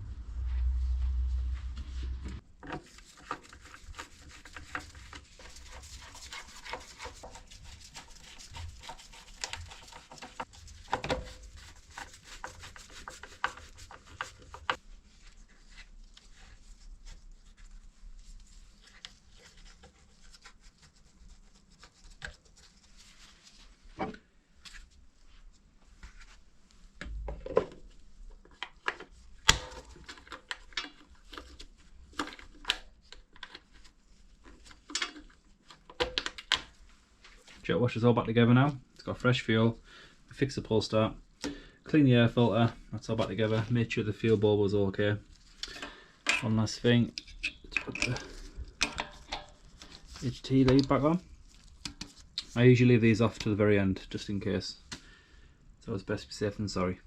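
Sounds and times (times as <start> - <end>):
filter parts rubbing and clicking: 0.1 - 24.1, 45.2 - 53.6.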